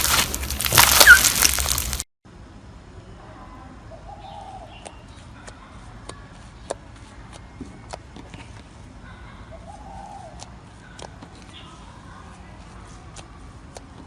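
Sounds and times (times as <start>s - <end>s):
low warbling call: 0.8s - 1.7s.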